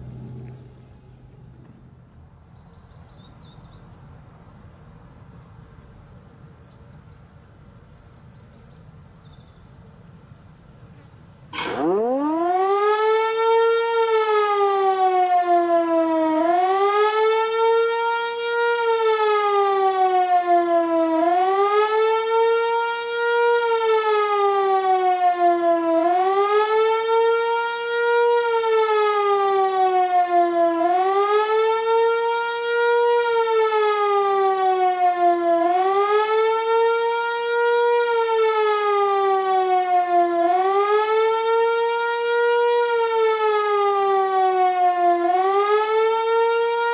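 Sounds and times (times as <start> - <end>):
siren howling: 11.5 - 46.9.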